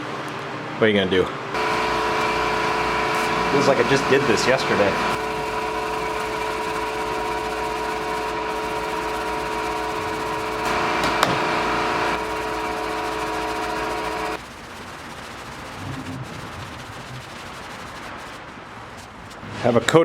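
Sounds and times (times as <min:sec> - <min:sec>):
electric sander whining: 0:01.6 - 0:14.4.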